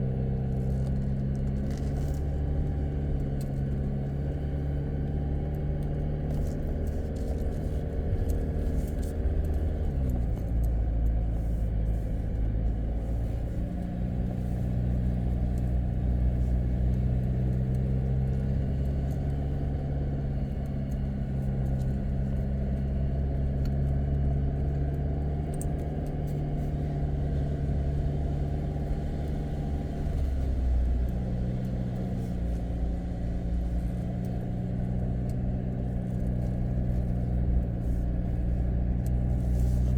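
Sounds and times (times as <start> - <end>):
car engine driving: 0.0 - 39.9.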